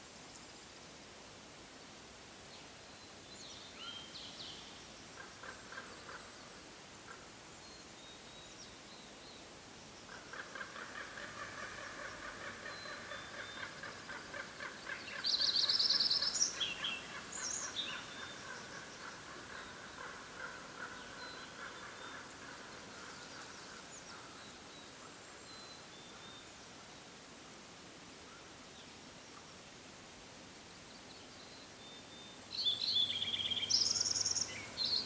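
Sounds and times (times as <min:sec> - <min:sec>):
birds chirping: 0:32.5 - 0:35.0.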